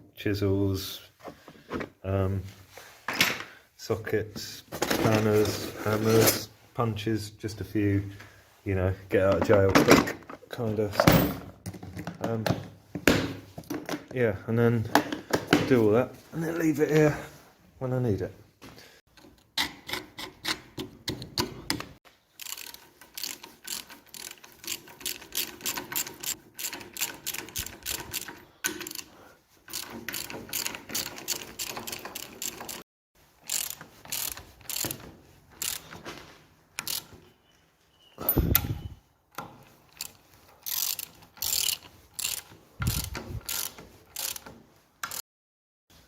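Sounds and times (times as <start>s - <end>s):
ratchet spanner clicking: 22.4s - 29.1s, 33.4s - 35.0s, 35.6s - 35.8s, 36.8s - 37.1s, 39.9s - 45.2s.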